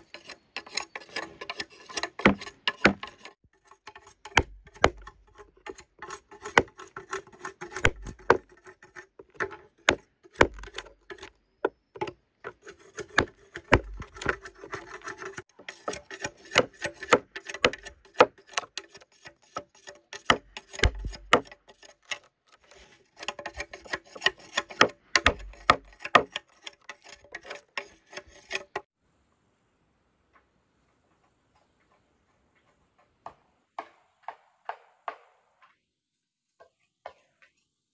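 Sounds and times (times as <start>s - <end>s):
scraping and rubbing wood: 0.0s - 28.9s
sharp wooden knocks: 2.2s - 3.3s, 4.2s - 5.2s, 6.4s - 8.5s, 9.2s - 14.9s, 20.2s - 21.6s, 23.3s - 26.3s.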